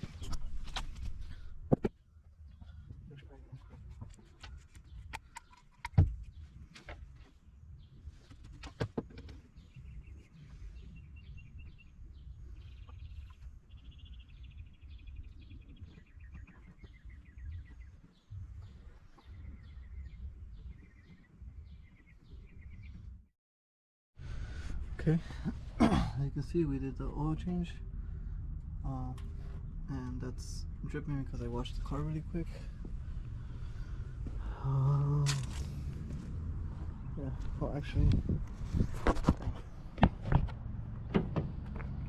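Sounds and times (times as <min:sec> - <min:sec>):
small birds chirping: 0:00.0 - 0:23.2
steady low rumble: 0:24.2 - 0:42.0.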